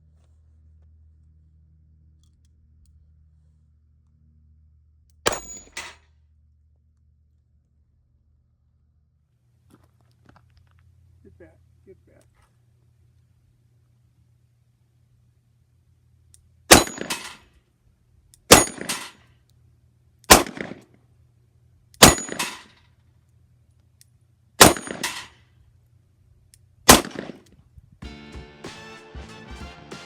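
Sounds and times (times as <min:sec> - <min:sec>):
bullet striking steel plate: 0:05.2 - 0:06.0, 0:16.7 - 0:17.4, 0:18.5 - 0:19.2, 0:22.0 - 0:22.8, 0:24.6 - 0:25.3.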